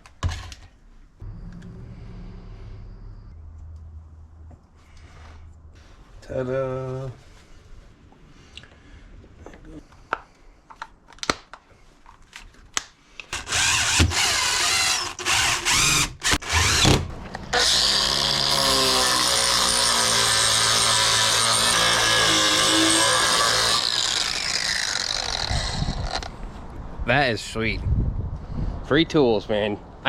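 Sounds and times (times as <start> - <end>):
angle grinder motor whining: 13.4 - 26.3.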